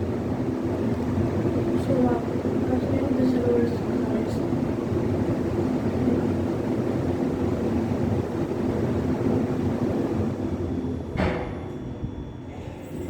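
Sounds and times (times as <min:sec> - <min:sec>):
elevator low rumble: 0:00.0 - 0:13.0
elevator clunk: 0:11.1 - 0:11.9.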